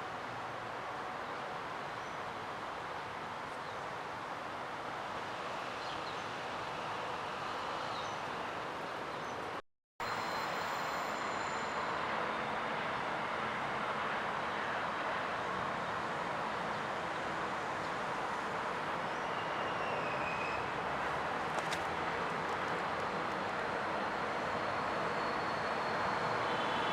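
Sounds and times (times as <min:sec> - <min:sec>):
train running noise: 0:09.4 - 0:26.9.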